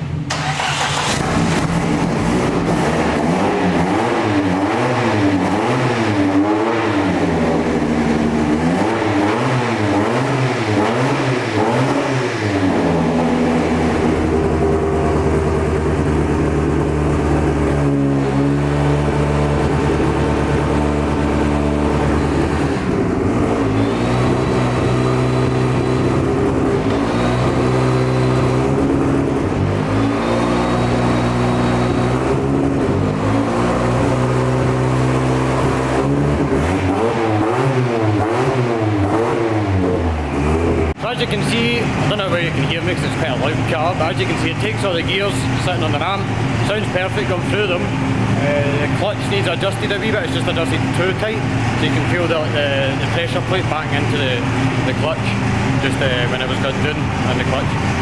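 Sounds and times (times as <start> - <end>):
loud car engine revving: 0.0 - 58.0.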